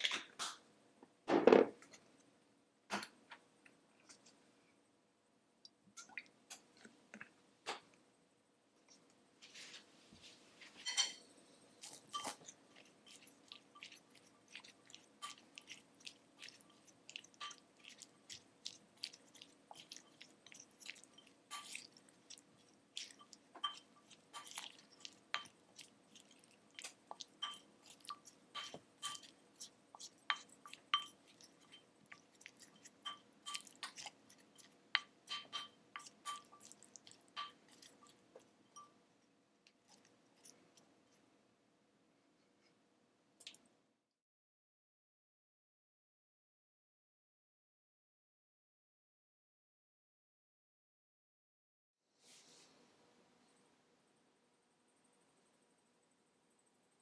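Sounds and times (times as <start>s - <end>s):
utensil clinking on ceramic dish: 10.6s - 39.0s.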